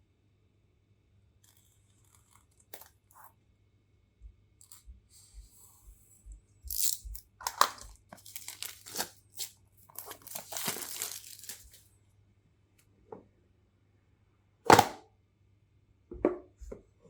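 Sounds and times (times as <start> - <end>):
paper packaging tearing and crinkling: 6.7 - 11.9.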